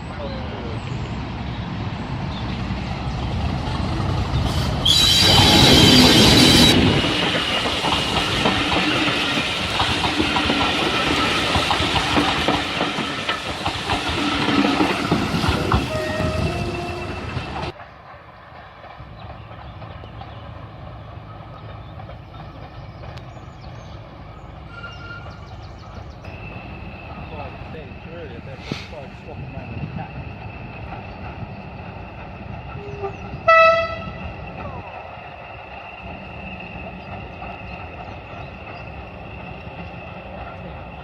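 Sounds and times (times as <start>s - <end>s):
train wheels clattering on rails: 2.3s - 41.0s
train horn: 4.5s - 7.0s, 15.8s - 17.7s, 24.7s - 25.4s, 32.8s - 34.3s.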